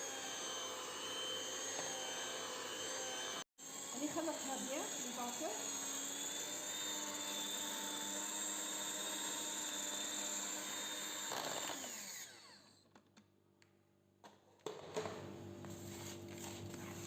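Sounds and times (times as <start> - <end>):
electric hand mixer whirring: 0.0 - 12.8.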